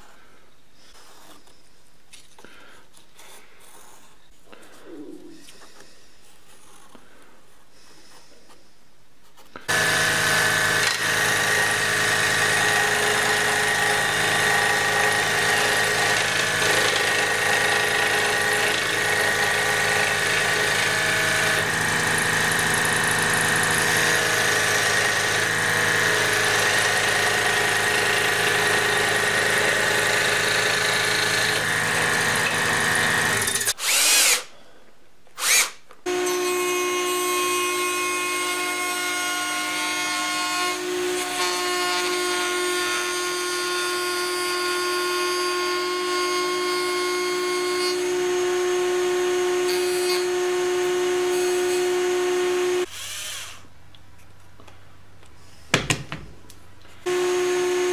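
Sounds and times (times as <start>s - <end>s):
electric power tool running: 9.7s - 34.4s, 47.2s - 53.6s, 57.1s - 57.9s.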